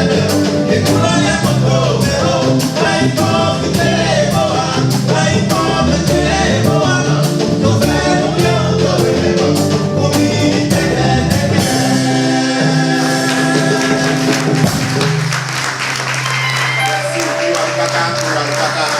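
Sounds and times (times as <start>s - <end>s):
voices singing: 0.0s - 14.8s
band with percussion beat: 0.0s - 18.9s.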